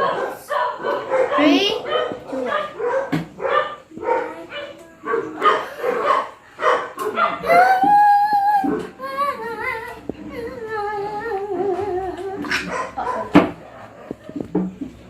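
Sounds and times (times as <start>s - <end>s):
person humming a slow tune: 7.4s - 12.7s.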